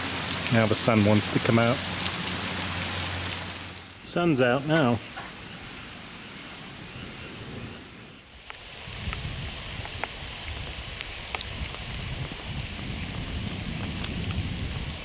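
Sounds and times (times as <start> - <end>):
hail pattering: 8.3 - 15.0
hailstones clicking: 8.4 - 15.0.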